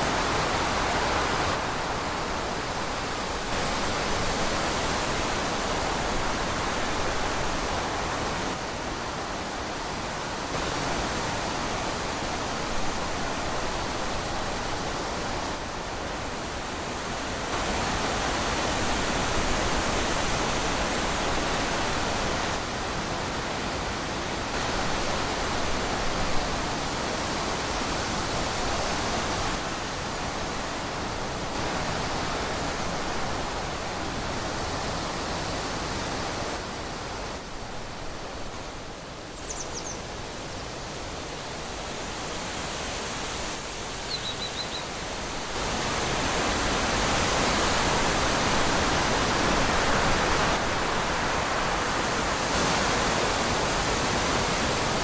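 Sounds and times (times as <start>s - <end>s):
wind blowing through trees: 0.0s - 55.0s
faint bird chirping: 39.3s - 40.1s, 44.0s - 44.9s.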